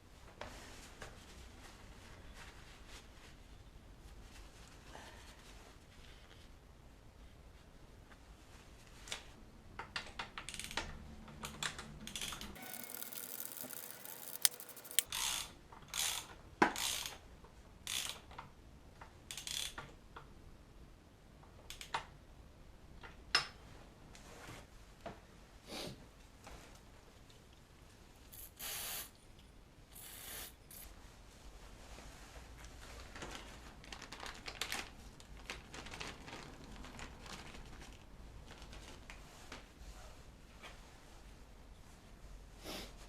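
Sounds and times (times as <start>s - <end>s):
hand tools on metal: 12.6s - 15.1s.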